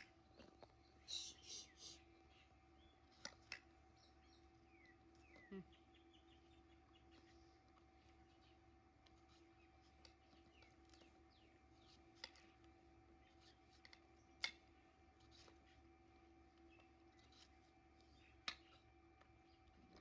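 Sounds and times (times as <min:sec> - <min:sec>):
faint chirps: 0:00.0 - 0:03.2, 0:04.0 - 0:07.7
low steady hum: 0:00.0 - 0:20.0.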